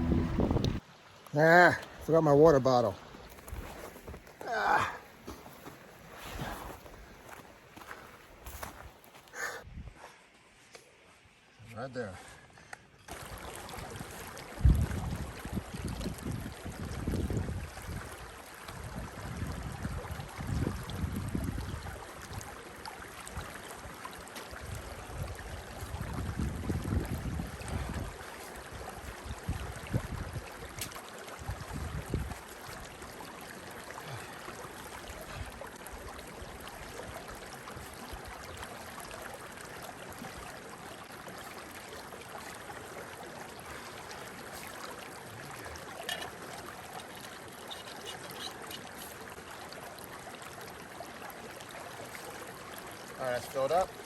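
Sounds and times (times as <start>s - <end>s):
low rumbling on microphone: 0.0s - 0.8s
creek water rushing: 0.0s - 9.6s, 13.1s - 54.0s.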